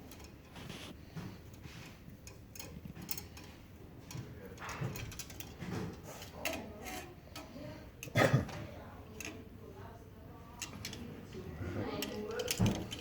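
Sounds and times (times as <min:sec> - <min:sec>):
wire being handled: 0:00.0 - 0:08.2, 0:10.5 - 0:13.0
hand tools clicking and tapping: 0:01.5 - 0:08.2, 0:12.0 - 0:13.0.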